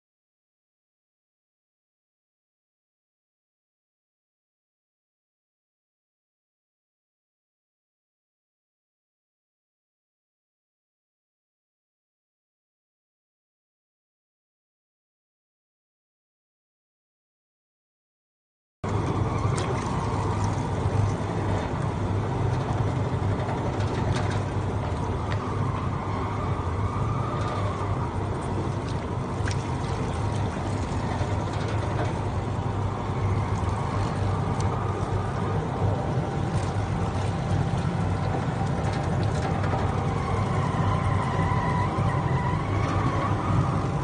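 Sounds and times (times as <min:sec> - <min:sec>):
machine motor hum: 0:18.9 - 0:44.0.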